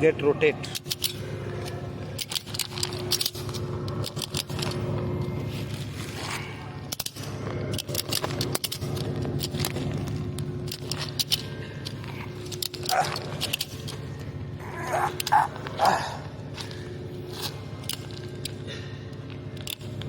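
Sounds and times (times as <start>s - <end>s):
low machinery hum: 0.0s - 20.0s
ratchet strap clicking: 0.7s - 4.8s, 6.9s - 14.1s, 19.5s - 20.0s.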